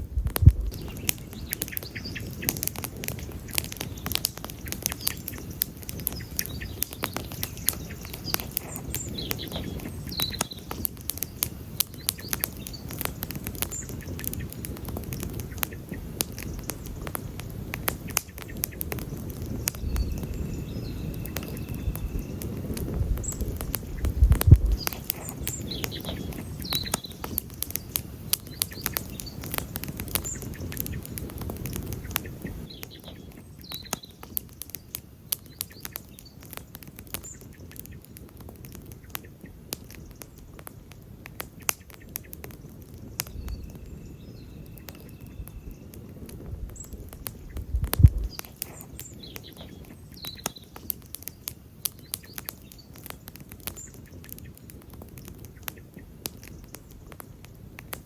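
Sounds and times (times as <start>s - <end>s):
low rumble: 0.0s - 0.8s
campfire crackling and popping: 0.0s - 58.0s.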